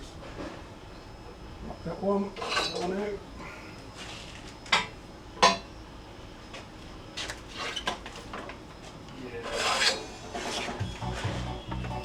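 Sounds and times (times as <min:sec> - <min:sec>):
metal sliding scrape: 0:09.5 - 0:11.3.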